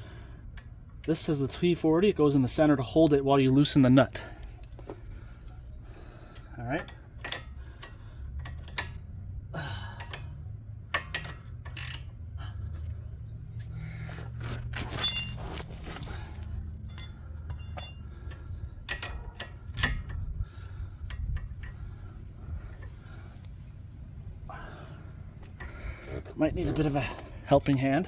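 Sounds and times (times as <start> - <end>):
low steady hum: 0.0 - 28.0
metal tools clinking: 14.6 - 16.0, 16.8 - 20.2.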